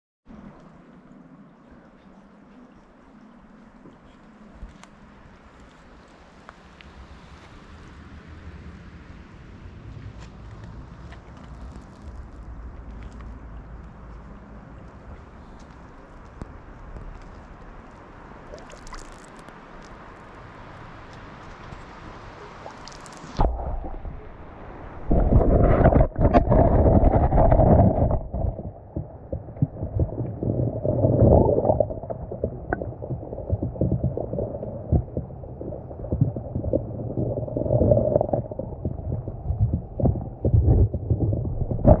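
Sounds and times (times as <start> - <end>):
water drips: 10.4 - 24.4, 25.1 - 42.0
spring water trickling: 14.8 - 42.0
wind buffeting microphone: 23.3 - 42.0.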